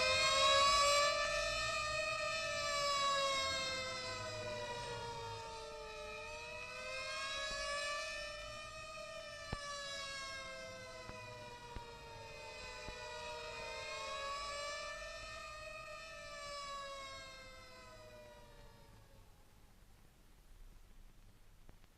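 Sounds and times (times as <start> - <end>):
mechanical sirens wailing: 0.0 - 19.5.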